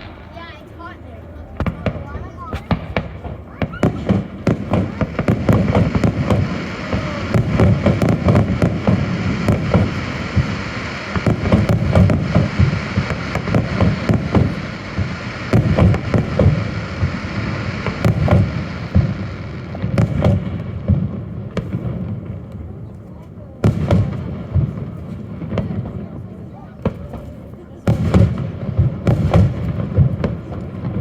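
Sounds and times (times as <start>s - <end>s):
fireworks bangs and crackles: 0.0s - 31.0s.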